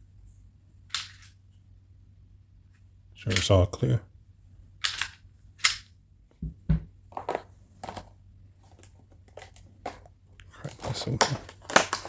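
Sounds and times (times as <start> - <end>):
pistol metallic clicks: 4.8 - 5.9
dull knock: 6.4 - 6.9.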